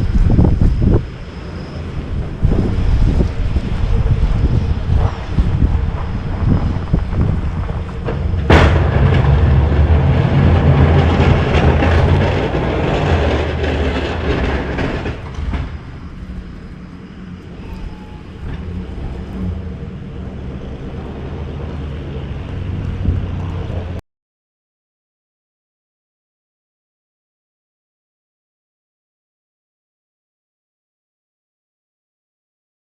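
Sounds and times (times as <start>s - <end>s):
heavy vehicle engine rumbling: 0.0s - 24.0s.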